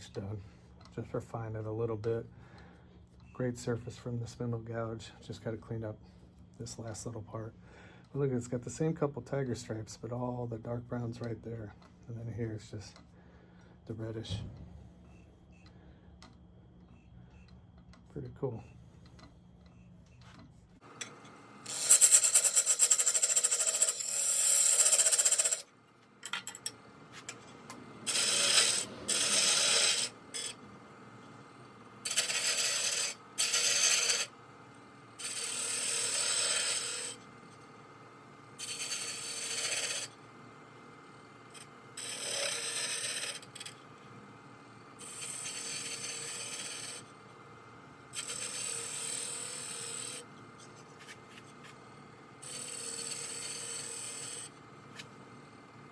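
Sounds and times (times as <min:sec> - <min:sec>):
lathe humming: 0:20.8 - 0:25.7, 0:26.3 - 0:55.9
turning tool scraping wood: 0:21.7 - 0:25.7, 0:26.6 - 0:34.6, 0:35.2 - 0:55.9.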